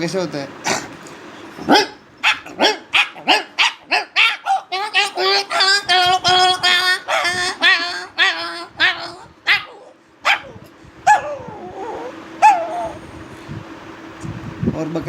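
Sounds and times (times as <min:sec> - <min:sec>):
man imitating dogs barking: 0:01.6 - 0:13.0
sharp yelps dropping in pitch: 0:01.6 - 0:13.0.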